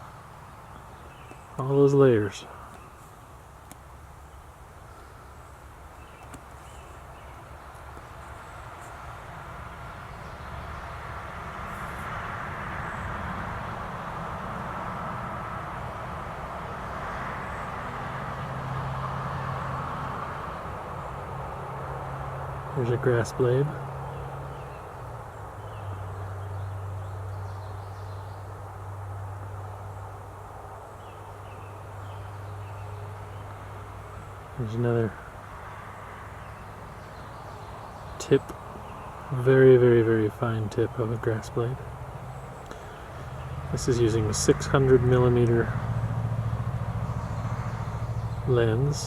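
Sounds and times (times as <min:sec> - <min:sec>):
bird chirps: 0:00.0 - 0:01.8, 0:04.2 - 0:09.0
distant vehicle rumble: 0:00.0 - 0:49.0.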